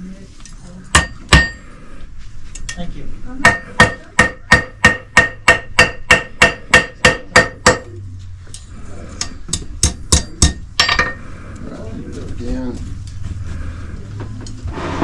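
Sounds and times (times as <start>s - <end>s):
hammer ringing on anvil: 1.0s - 1.6s, 3.4s - 7.8s.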